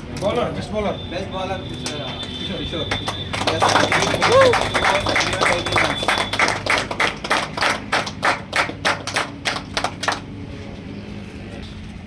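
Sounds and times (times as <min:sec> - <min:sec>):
people clapping: 0:01.7 - 0:10.4.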